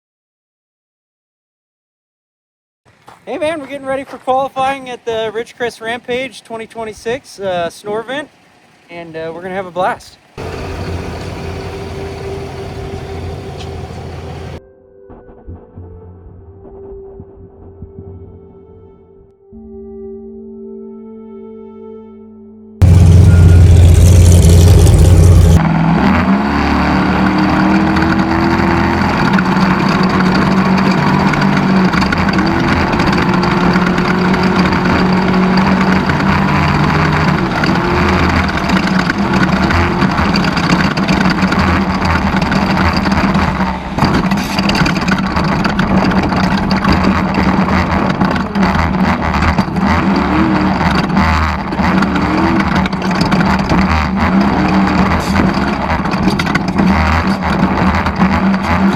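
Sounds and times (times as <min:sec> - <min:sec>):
race vehicle engine revving: 0:04.9 - 0:14.6, 0:22.8 - 0:58.9
very loud low rumble: 0:10.4 - 0:14.6, 0:22.8 - 0:25.6.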